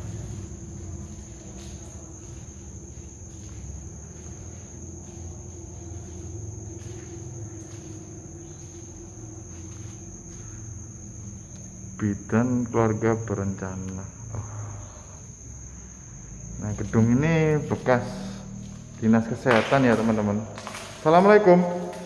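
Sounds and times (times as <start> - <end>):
crickets trilling: 0.0 - 22.0.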